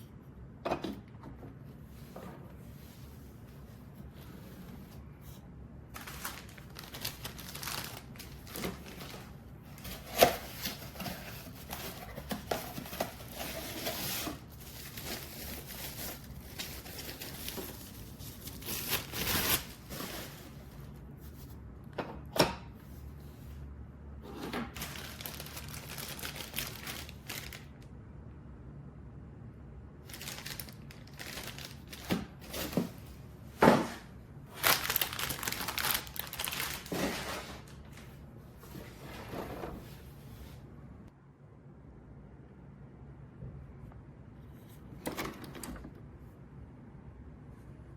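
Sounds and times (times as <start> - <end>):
crinkling and rustling: 1.3 - 21.6, 24.3 - 27.8, 30.1 - 40.5.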